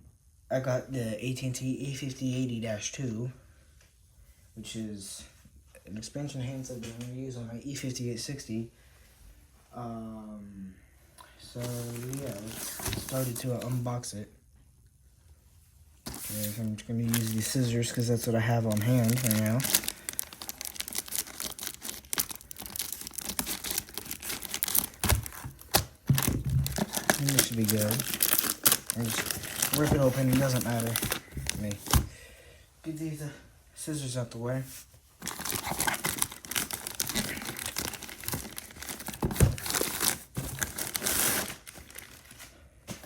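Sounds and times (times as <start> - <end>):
packaging crinkling and tearing: 11.6 - 13.7, 16.1 - 32.1, 35.2 - 43.0.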